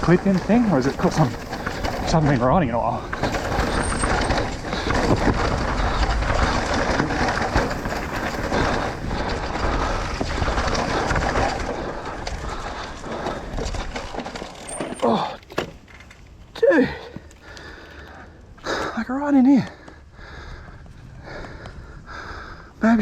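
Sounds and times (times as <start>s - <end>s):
wind rumble: 0.0s - 14.7s, 19.8s - 23.0s
rushing trail noise: 0.0s - 15.4s
small rattles and crackles: 0.0s - 18.6s.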